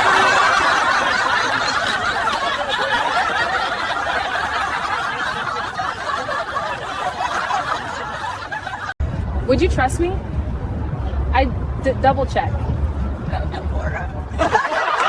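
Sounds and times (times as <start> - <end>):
group of people laughing: 0.0 - 9.0, 13.2 - 15.0.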